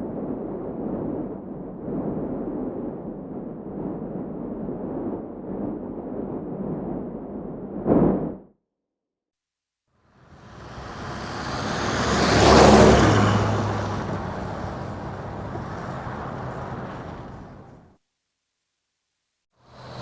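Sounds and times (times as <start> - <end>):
motor vehicle passing by: 10.2 - 17.9, 19.7 - 20.0.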